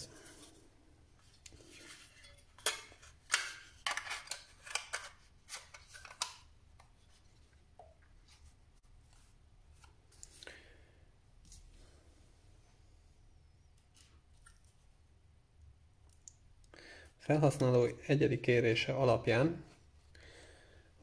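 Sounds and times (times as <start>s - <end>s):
plastic and metal parts clicking: 2.6s - 6.5s.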